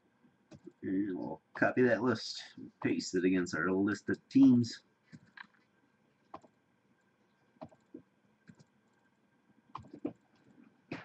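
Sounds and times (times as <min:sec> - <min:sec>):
mouse and keyboard clicks: 0:06.3 - 0:06.6, 0:07.6 - 0:09.0, 0:09.7 - 0:10.2.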